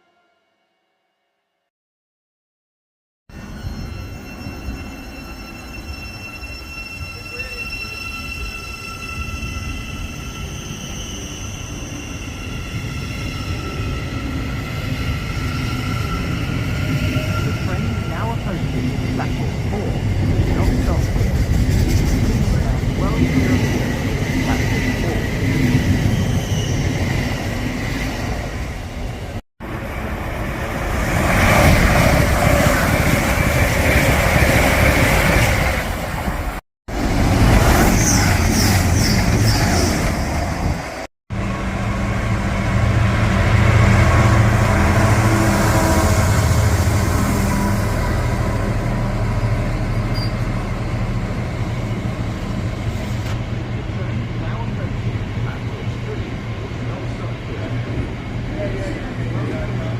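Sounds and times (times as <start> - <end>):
train passing with roar: 3.3 - 59.9
train rumble: 13.5 - 59.9.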